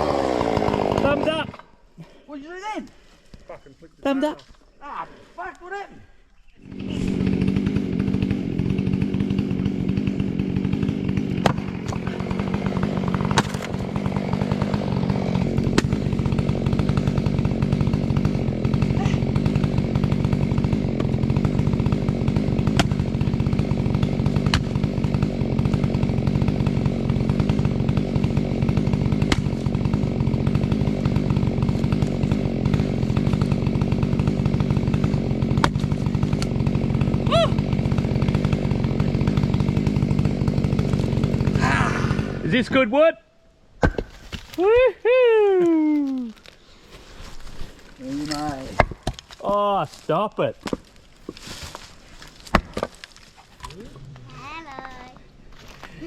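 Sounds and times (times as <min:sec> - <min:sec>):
chainsaw running: 0:00.0 - 0:02.2, 0:06.6 - 0:43.0, 0:45.6 - 0:49.6.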